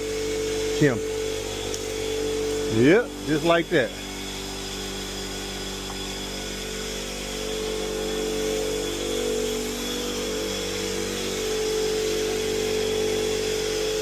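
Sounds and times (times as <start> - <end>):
higher tone: 0.0 - 6.9
motor humming: 0.0 - 14.0.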